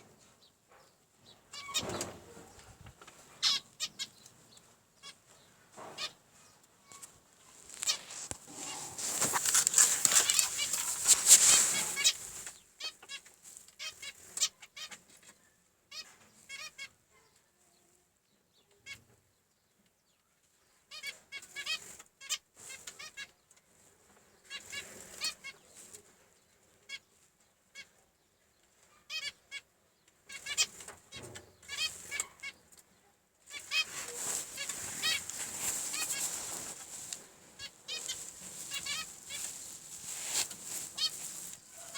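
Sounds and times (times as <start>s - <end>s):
wing flapping: 7.6s - 12.5s, 33.6s - 41.9s
finches chirping: 33.6s - 41.9s.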